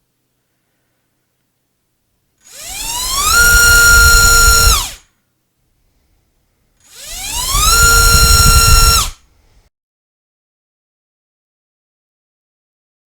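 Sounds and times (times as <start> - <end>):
electric motor propeller whine: 2.5 - 5.0, 6.9 - 9.2.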